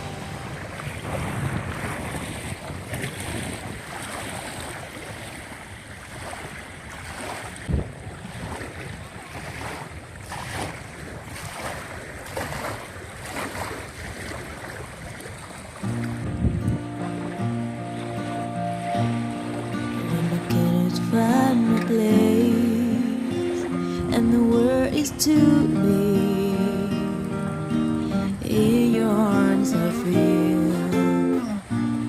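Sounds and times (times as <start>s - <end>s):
music: 0.0s - 0.6s, 15.9s - 32.0s
wind buffeting microphone: 0.0s - 21.6s
water washing and splashing: 0.0s - 24.7s.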